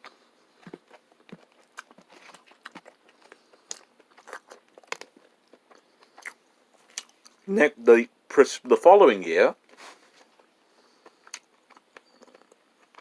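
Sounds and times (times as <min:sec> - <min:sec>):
person chewing steak: 0:00.0 - 0:07.4, 0:10.1 - 0:13.0.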